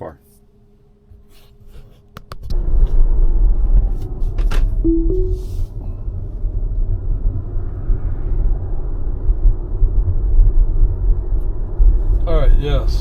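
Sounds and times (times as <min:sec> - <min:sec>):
road and tyre noise in car: 0:06.8 - 0:13.0.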